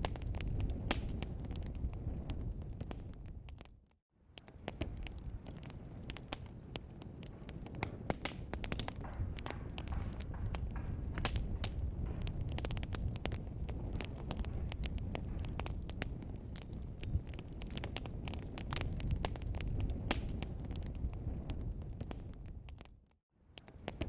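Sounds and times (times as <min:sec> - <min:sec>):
low rumble of flames: 0:00.0 - 0:24.0
wood fire crackling: 0:00.0 - 0:24.0.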